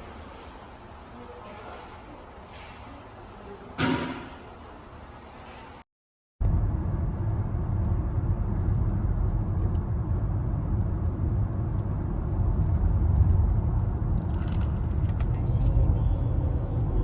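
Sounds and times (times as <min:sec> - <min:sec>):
road and engine rumble in car: 0:06.4 - 0:17.0.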